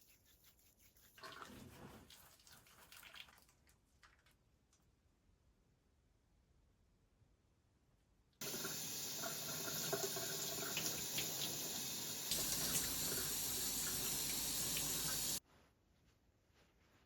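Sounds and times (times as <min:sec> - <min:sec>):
tap water running into sink: 0:08.4 - 0:15.4.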